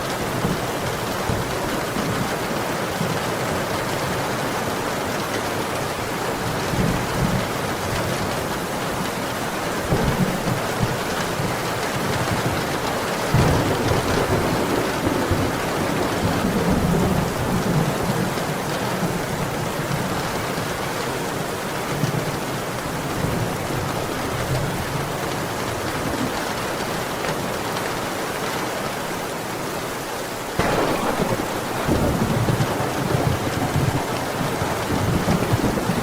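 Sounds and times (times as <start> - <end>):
heavy rain: 0.0 - 36.0
thunder rumbling: 9.8 - 20.0, 30.6 - 36.0.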